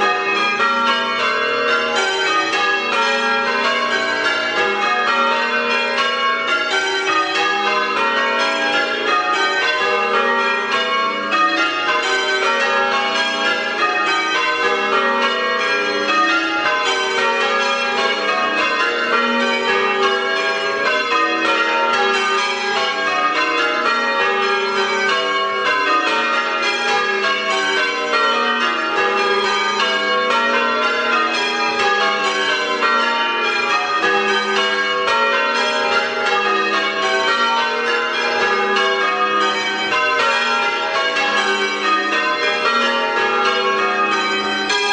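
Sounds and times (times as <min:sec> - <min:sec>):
church bells change ringing: 0:00.0 - 0:44.9.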